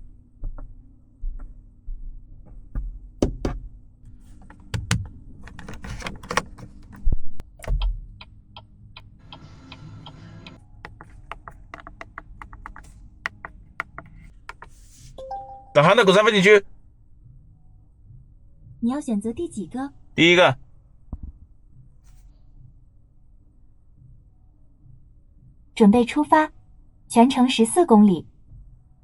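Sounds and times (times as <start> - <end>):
dull thumps: 2.8 - 8.0
handling clicks and taps: 3.2 - 3.6, 4.2 - 7.9, 10.8 - 14.8.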